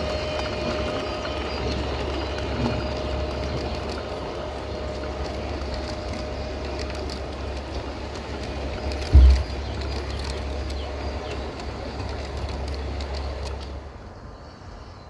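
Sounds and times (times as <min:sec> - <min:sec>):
model train running on track: 0:00.0 - 0:15.0
low thump: 0:09.1 - 0:09.8.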